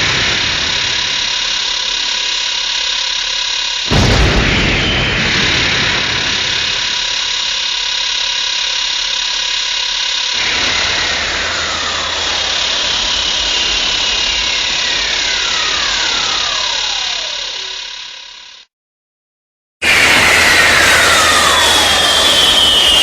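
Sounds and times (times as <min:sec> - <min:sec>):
falling whistle-like tones: 0:03.9 - 0:08.2, 0:10.4 - 0:17.9, 0:19.8 - 0:23.0.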